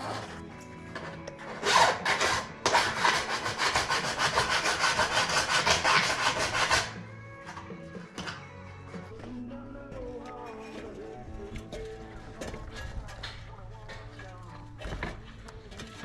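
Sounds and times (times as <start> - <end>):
rasping saw-like strokes: 0.0 - 0.4, 1.0 - 8.4
scraping: 0.0 - 16.0.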